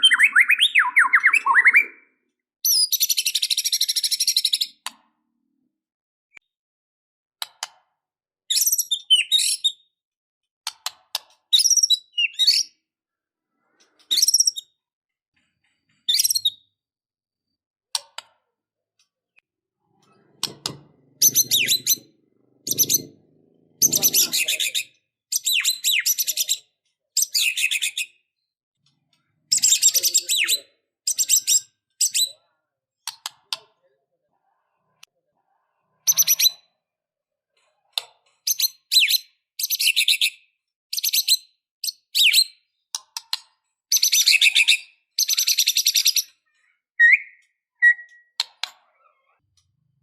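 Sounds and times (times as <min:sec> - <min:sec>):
songbird singing varied phrases: 0:00.0 - 0:04.7, 0:47.0 - 0:48.4.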